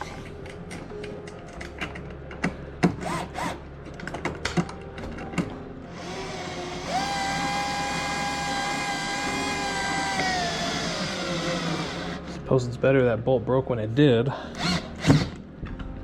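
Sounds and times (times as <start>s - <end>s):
clicks and knocks of tools: 0.2s - 3.0s, 3.8s - 5.6s
power drill running: 5.9s - 12.3s, 14.6s - 15.4s.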